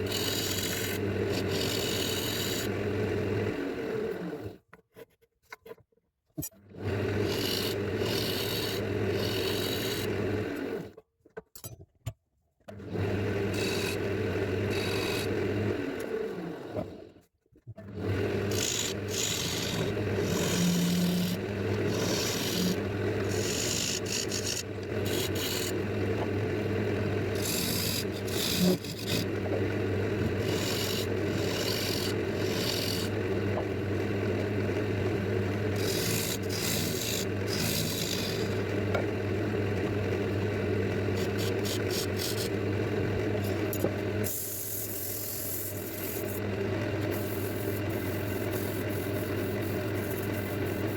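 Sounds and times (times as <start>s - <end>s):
tool rasping on spinning wood: 0.0s - 2.8s, 7.1s - 10.7s, 13.4s - 15.8s, 18.3s - 33.9s, 34.7s - 39.1s, 41.0s - 50.9s
lathe motor hum: 0.0s - 4.5s, 6.9s - 10.9s, 12.8s - 17.0s, 17.9s - 50.9s.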